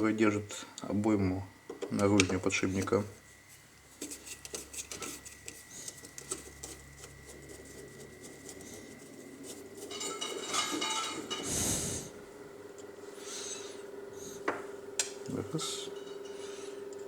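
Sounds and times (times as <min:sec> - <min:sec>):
metallic scraping and rattling: 0:09.8 - 0:12.1.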